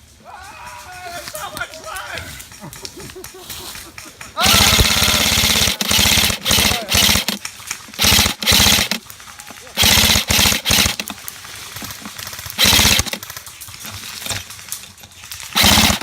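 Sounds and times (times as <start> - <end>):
airsoft gun firing bursts: 4.4 - 13.8, 15.4 - 16.0.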